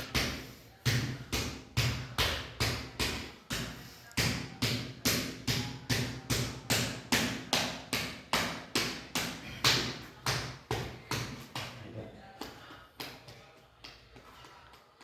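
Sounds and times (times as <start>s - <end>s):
hand slapping rhythmically: 0.0s - 15.0s.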